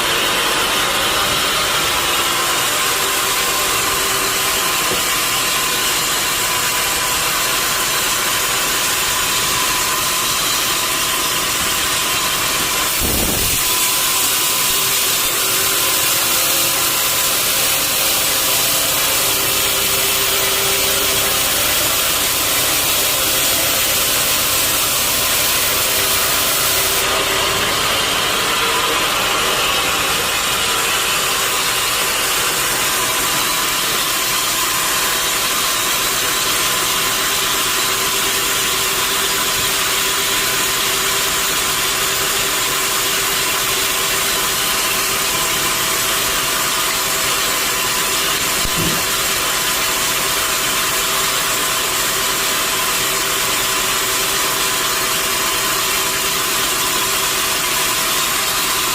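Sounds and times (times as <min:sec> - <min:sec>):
sawmill machinery running: 0:00.0 - 0:58.9
brief knock: 0:48.6 - 0:49.2.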